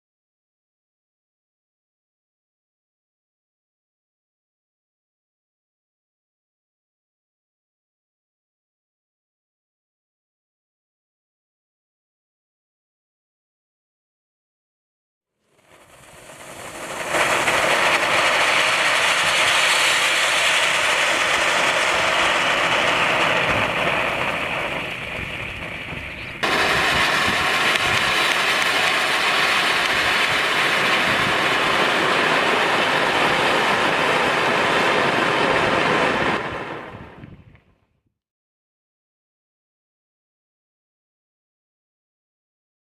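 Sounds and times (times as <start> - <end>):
firework fountain hissing and crackling: 15.4 - 37.6.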